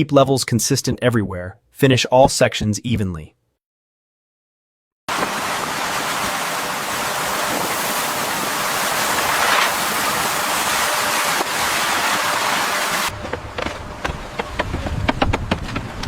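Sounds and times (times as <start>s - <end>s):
rushing water hiss: 5.1s - 13.1s.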